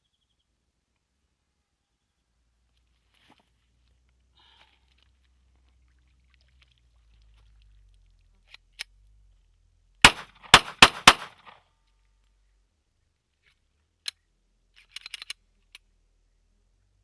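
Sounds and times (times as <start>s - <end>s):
pistol shots: 10.1s - 11.5s
faint handling clicks: 14.8s - 15.9s.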